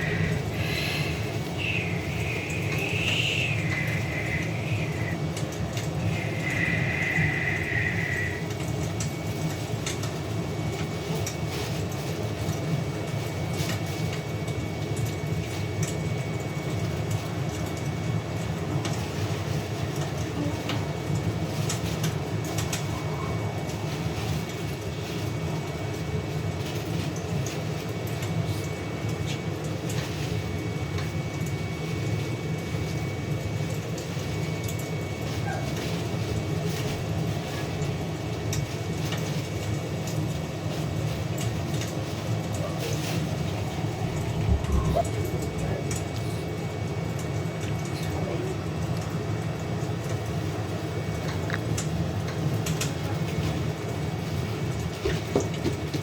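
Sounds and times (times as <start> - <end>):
fire crackling and popping: 0.0 - 22.9, 23.5 - 56.0
high whistling tone: 1.5 - 5.2, 6.0 - 8.5
low rumble: 43.5 - 46.2.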